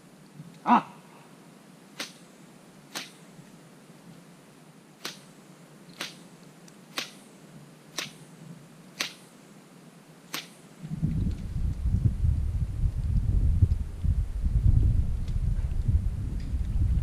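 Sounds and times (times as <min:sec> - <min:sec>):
short sharp clicks: 0:02.9 - 0:03.2, 0:09.0 - 0:09.2.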